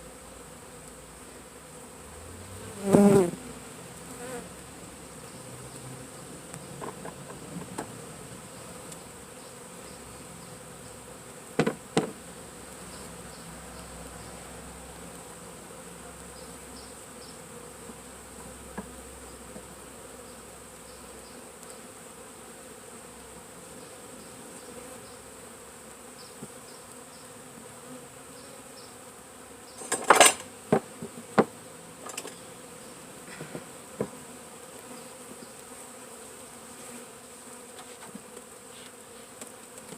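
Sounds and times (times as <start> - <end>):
honeybees buzzing: 0.0 - 39.9
sharp knocks: 11.6 - 12.2.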